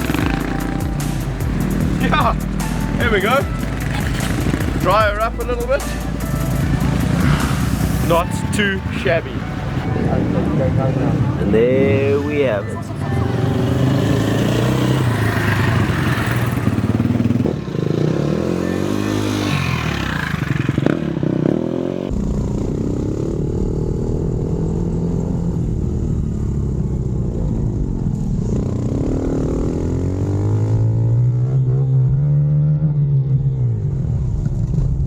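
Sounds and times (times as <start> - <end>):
dirt bike engine revving: 0.0 - 9.4, 10.2 - 26.7.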